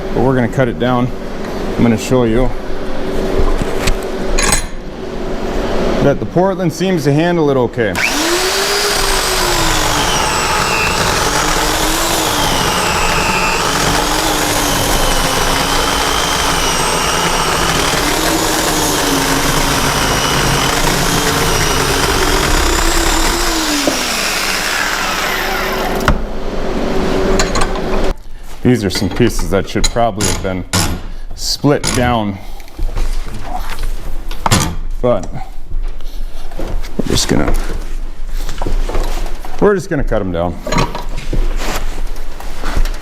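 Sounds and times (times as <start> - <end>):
electric chainsaw cutting log: 8.0 - 26.1.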